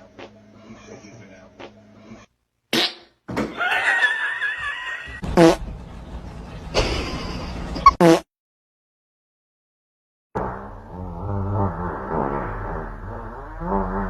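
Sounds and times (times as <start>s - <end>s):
fart sound effects: 2.7s - 3.2s, 5.2s - 5.6s, 7.8s - 8.3s, 10.4s - 14.0s.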